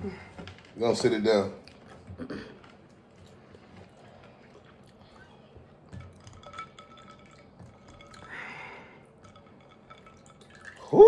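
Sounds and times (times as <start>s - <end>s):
milk dripping: 2.8s - 11.0s.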